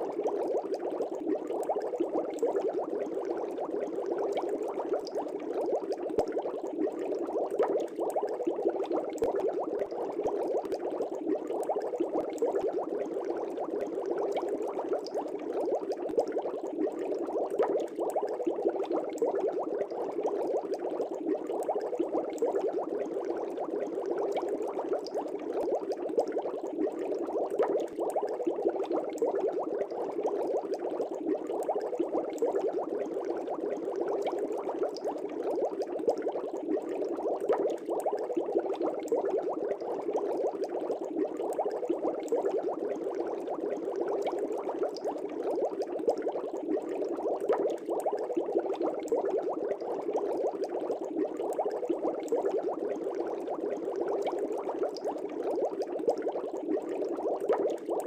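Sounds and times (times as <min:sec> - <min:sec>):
air bubbles in fish tank: 0:00.0 - 0:58.0.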